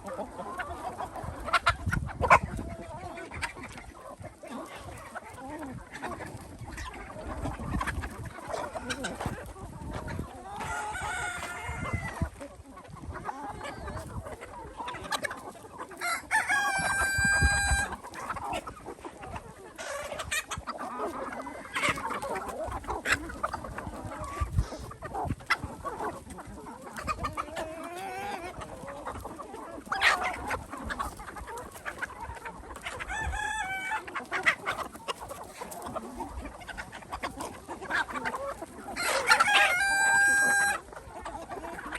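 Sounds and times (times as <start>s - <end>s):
chickens clucking: 0.0s - 41.9s
rooster crowing: 16.0s - 17.9s, 39.4s - 40.8s.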